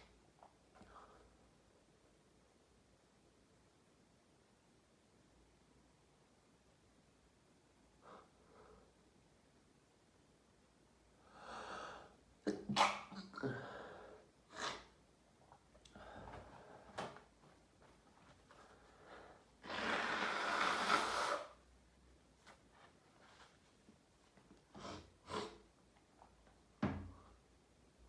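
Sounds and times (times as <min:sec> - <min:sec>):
man sneezing: 0:12.5 - 0:13.7.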